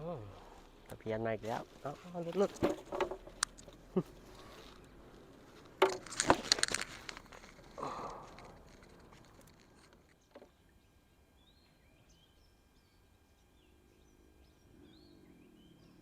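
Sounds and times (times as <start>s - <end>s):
faint bird chirps: 10.1s - 16.0s.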